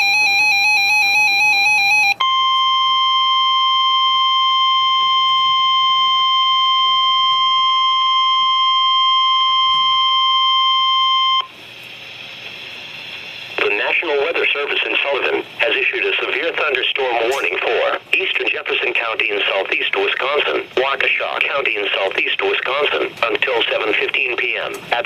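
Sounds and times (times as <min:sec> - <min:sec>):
loud high warning tone: 0:00.0 - 0:11.7.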